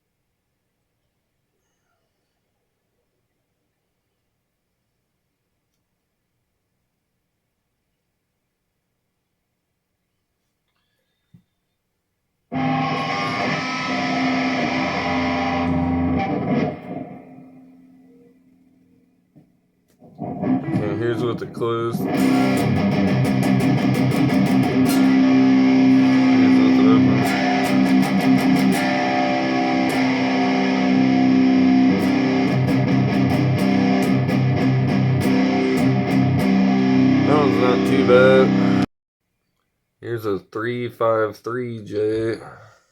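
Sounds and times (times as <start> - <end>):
electric guitar chord ringing: 12.5 - 18.3, 22.0 - 38.9
electric guitar notes: 12.5 - 18.3, 20.2 - 38.9.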